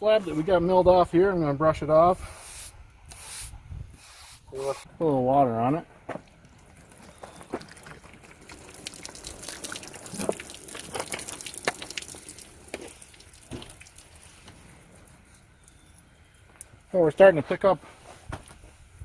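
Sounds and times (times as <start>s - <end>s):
water splashing onto wood: 6.2s - 15.8s
water dripping: 6.2s - 16.9s.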